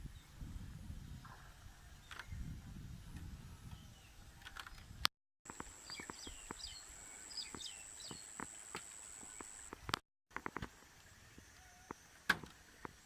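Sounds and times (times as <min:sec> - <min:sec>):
high-pitched insect whine: 0:05.5 - 0:09.9.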